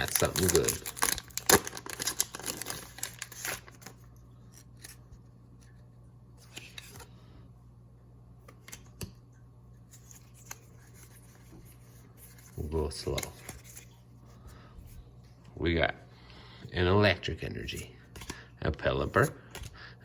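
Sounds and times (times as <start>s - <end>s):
foil wrapper and cards rustling: 0.0s - 5.1s.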